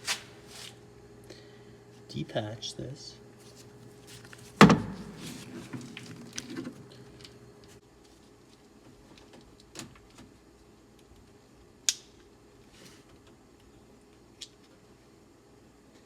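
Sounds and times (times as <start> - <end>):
rustling of parts: 3.4 - 10.2
sharp plastic snap: 11.9 - 12.1.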